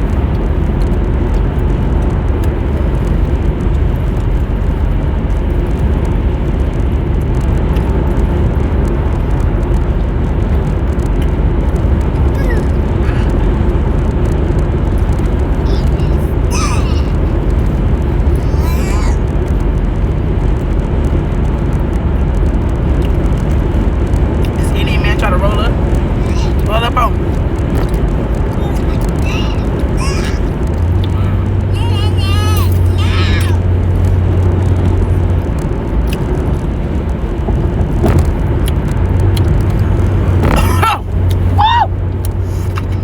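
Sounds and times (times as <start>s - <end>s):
car interior road rumble: 0.0s - 43.0s.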